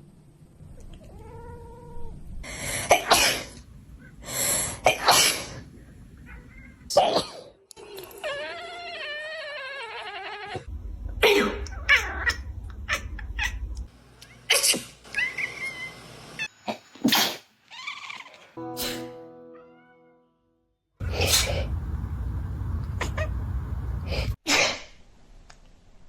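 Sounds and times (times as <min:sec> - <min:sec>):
cat yowling and meowing: 0:01.0 - 0:02.2, 0:08.1 - 0:10.7, 0:15.1 - 0:15.9
person sneezing: 0:18.8 - 0:19.1.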